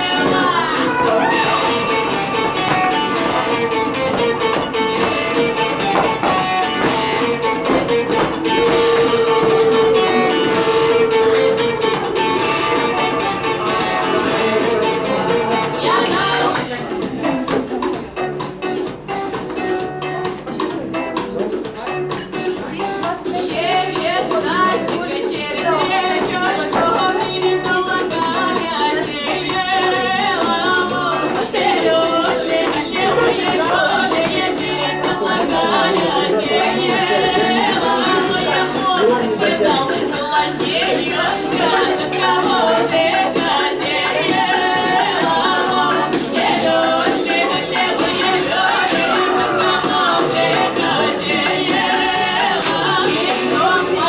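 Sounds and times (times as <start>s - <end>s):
girl singing with vibrato: 0.0s - 17.4s, 22.8s - 54.0s
plucked guitar music: 0.0s - 22.9s
instrumental backing music: 0.0s - 54.0s.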